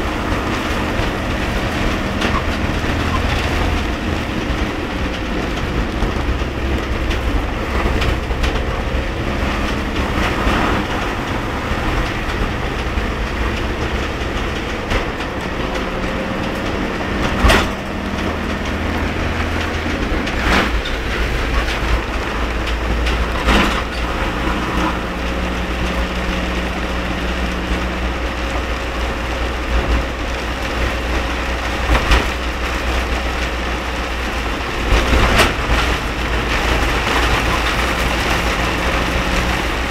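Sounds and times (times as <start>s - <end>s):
heavy rain on wet road: 0.0s - 39.9s
vehicle low rumble: 0.0s - 39.9s.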